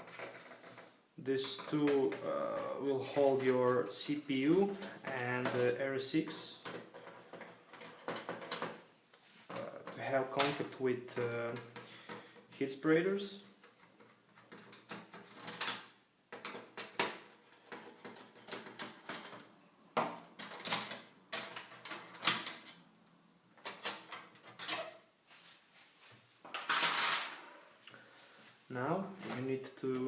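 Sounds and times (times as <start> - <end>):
parts clicking and scraping: 0.0 - 12.6, 13.4 - 19.5.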